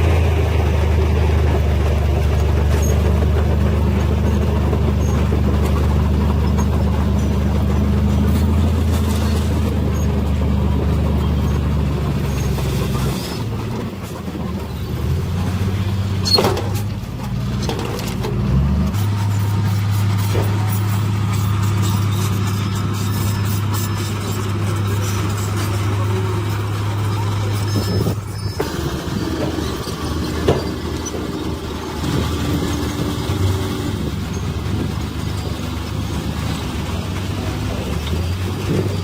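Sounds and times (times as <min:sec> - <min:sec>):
heavy diesel engine running: 0:00.0 - 0:39.0.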